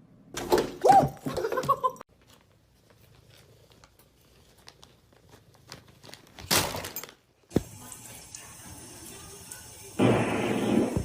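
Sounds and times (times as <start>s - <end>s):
rustling and crinkling: 1.4s - 7.6s.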